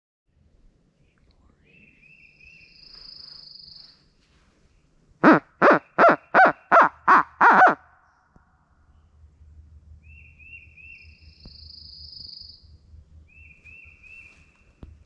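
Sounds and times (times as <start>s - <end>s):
owl hooting: 5.2s - 7.8s.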